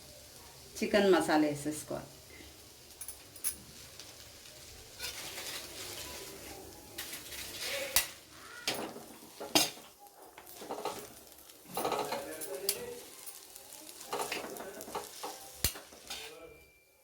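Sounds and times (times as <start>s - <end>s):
spoons scraping a pan: 4.9s - 16.7s
spoon clinking on metal: 8.7s - 13.5s, 14.1s - 16.9s.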